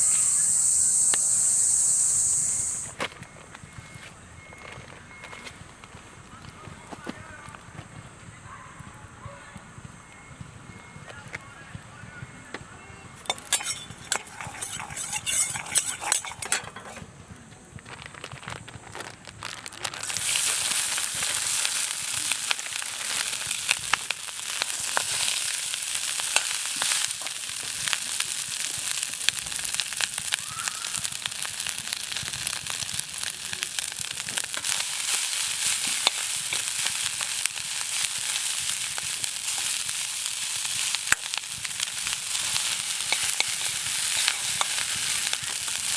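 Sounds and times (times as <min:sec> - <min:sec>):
meat sizzling in a hot pan: 0:00.0 - 0:02.9, 0:13.2 - 0:17.0, 0:20.0 - 0:45.9.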